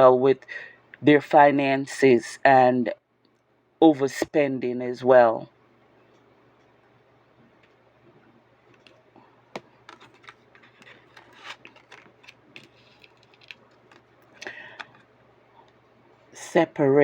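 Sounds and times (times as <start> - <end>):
cards clicking and tapping: 8.7 - 15.0.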